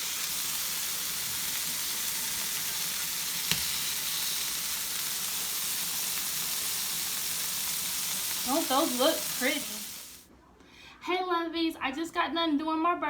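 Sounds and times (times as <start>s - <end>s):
burger patties sizzling on griddle: 0.0s - 10.2s.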